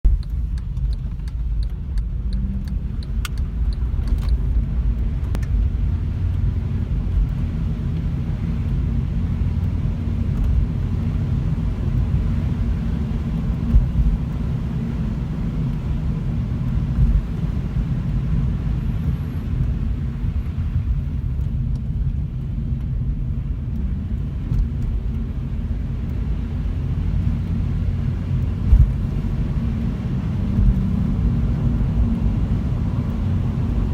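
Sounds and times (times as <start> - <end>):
tyre and road rumble: 0.0 - 33.9
suspension knocks over bumps: 13.3 - 14.6, 15.6 - 22.1, 27.2 - 32.2.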